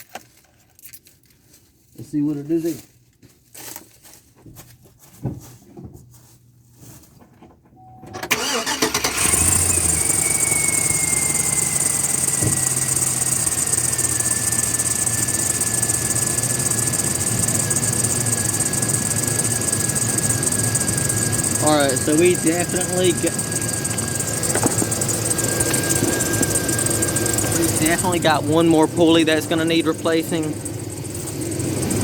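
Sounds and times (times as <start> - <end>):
engine cranking and starting: 8.1 - 32.0
engine idling: 8.2 - 32.0
thin pulley whine: 8.6 - 32.0.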